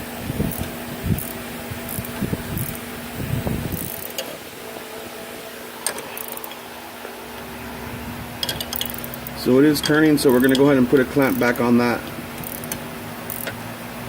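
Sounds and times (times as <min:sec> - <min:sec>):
steady hum: 0:00.0 - 0:14.0
wrench knocking: 0:05.8 - 0:06.6, 0:08.4 - 0:11.6, 0:12.4 - 0:13.6
sharp metallic click: 0:08.4 - 0:10.7, 0:12.4 - 0:13.6.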